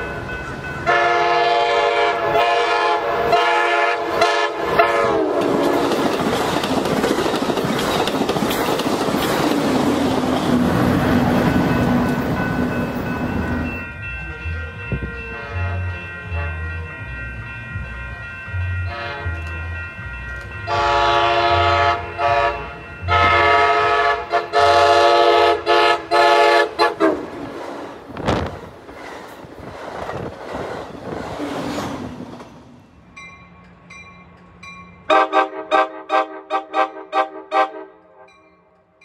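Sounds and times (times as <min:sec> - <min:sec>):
passing train rumble: 0:00.0 - 0:39.0
train horn blasts: 0:00.8 - 0:05.9, 0:15.3 - 0:16.6, 0:18.9 - 0:19.4, 0:20.7 - 0:27.2, 0:35.1 - 0:38.4.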